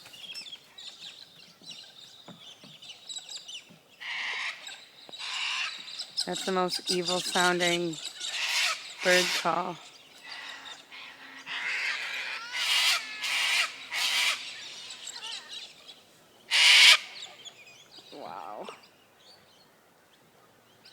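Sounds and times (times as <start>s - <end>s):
cockatoos screeching: 8.1s - 15.7s, 16.5s - 17.2s.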